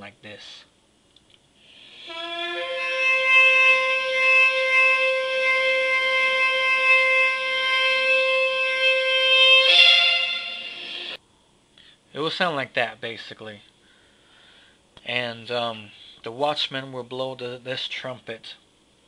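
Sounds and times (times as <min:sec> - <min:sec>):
trumpet blast: 0:01.7 - 0:11.2.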